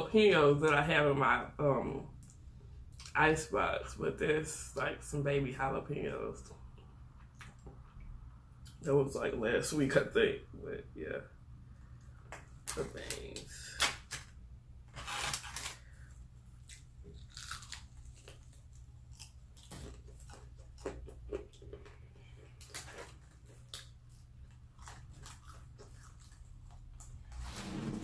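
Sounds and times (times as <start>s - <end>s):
person chewing and biting food: 16.5s - 27.2s.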